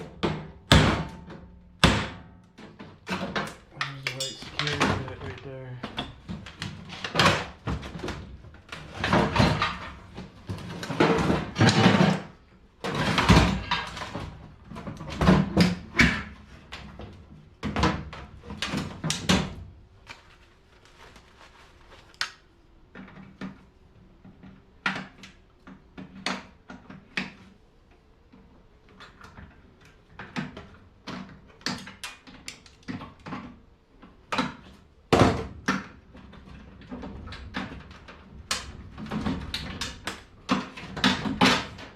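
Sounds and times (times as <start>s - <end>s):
microwave parts knocking and rattling: 0.0s - 19.9s, 28.3s - 41.9s.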